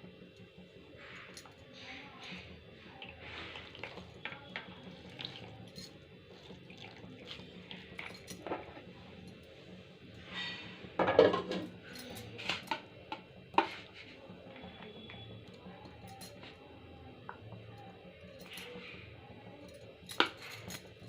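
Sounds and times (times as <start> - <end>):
dishes and utensils clinking: 10.3 - 12.8, 13.6 - 15.2, 20.1 - 21.0
dishes clattering: 10.5 - 11.7.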